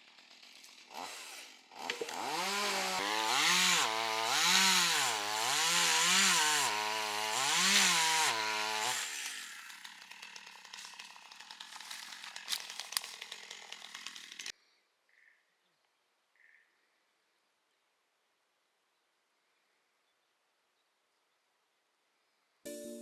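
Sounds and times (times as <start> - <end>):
chainsaw running under load: 0.0 - 14.5.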